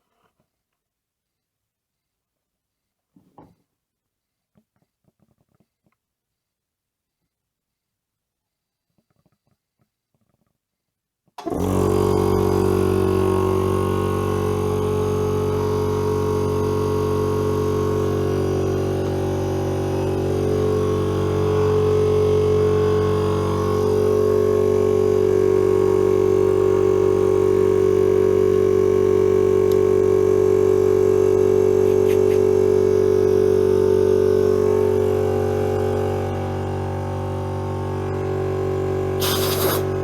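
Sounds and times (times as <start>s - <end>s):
air compressor droning hum: 12.6s - 36.6s, 39.1s - 40.0s.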